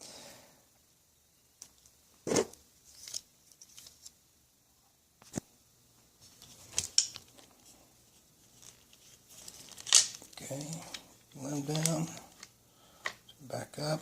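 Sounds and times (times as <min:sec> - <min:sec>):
rustling: 0:06.1 - 0:12.6.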